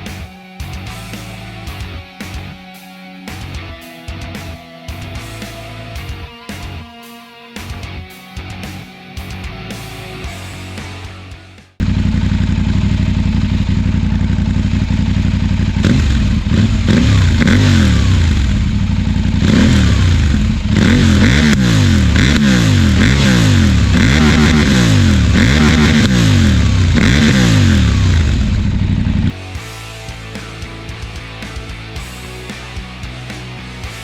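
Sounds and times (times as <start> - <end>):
motorcycle engine revving: 10.7 - 34.0.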